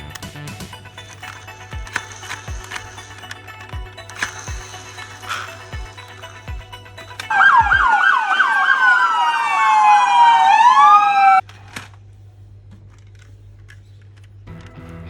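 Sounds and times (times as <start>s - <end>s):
toy siren wail: 1.0s - 11.4s
toy siren yelp: 1.0s - 11.4s.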